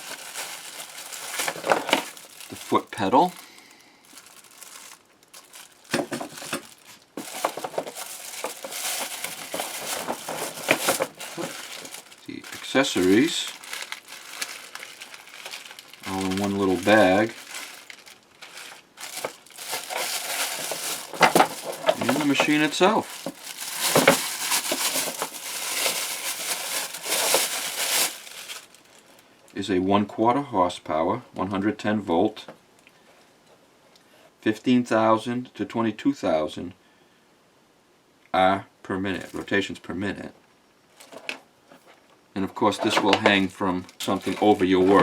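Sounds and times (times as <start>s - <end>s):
packaging crinkling and rustling: 0.0s - 29.3s, 41.0s - 42.1s, 42.7s - 45.0s.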